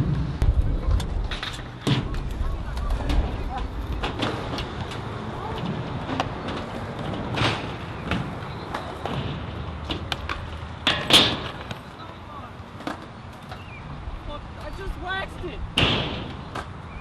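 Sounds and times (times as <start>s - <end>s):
skateboards rolling on concrete: 0.0s - 17.0s
skateboard clacks and knocks: 0.1s - 11.9s.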